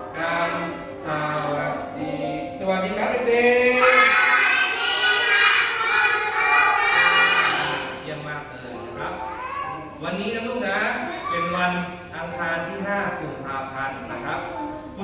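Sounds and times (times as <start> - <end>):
group singing in unison: 0.0 - 2.4.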